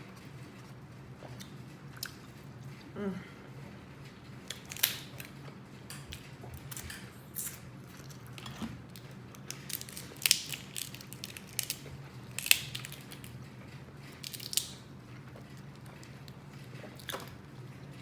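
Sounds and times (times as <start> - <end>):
crab shells cracking: 4.5 - 5.2, 9.3 - 13.4, 14.1 - 14.8.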